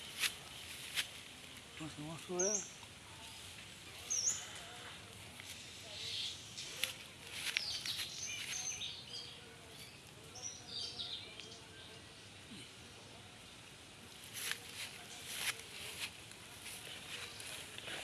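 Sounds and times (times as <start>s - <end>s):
birds chirping: 1.7s - 12.7s.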